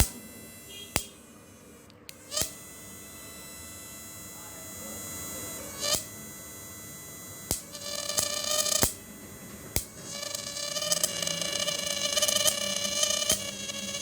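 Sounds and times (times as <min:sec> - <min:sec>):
inverter buzzing whine: 0:00.0 - 0:14.0
sharp switch clicks: 0:00.9 - 0:01.2.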